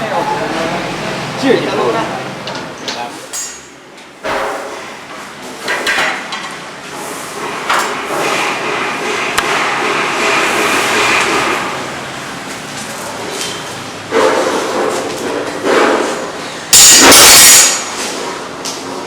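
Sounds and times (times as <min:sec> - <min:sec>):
work noise: 0:00.0 - 0:19.0
hammer blows: 0:16.7 - 0:18.2.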